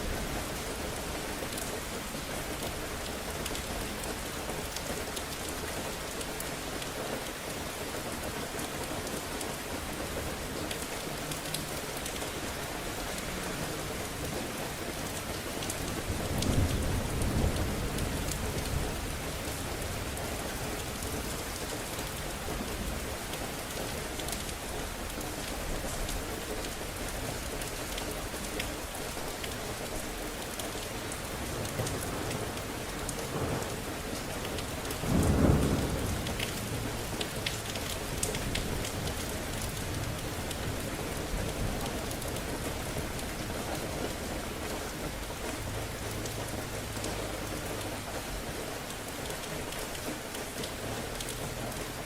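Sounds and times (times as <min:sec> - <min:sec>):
rain falling: 0:00.0 - 0:52.0
raindrop ticks: 0:02.5 - 0:52.0
thunder rumbling: 0:31.4 - 0:46.6.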